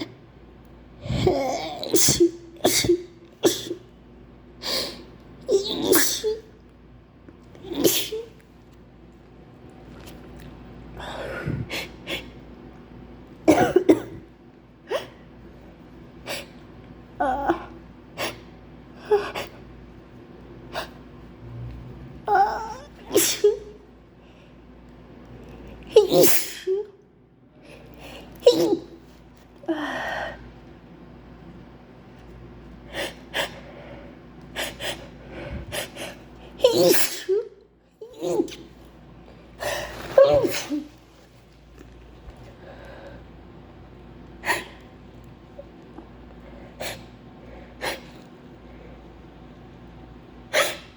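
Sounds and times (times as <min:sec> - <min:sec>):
woman sneezing: 0:01.1 - 0:03.8, 0:05.5 - 0:06.5, 0:07.6 - 0:08.4, 0:23.0 - 0:23.8, 0:25.9 - 0:27.0, 0:28.4 - 0:29.0, 0:36.6 - 0:38.7, 0:39.6 - 0:41.2, 0:50.5 - 0:50.9
woman breathing: 0:10.9 - 0:12.4, 0:29.6 - 0:30.7, 0:32.9 - 0:36.6, 0:42.4 - 0:43.4.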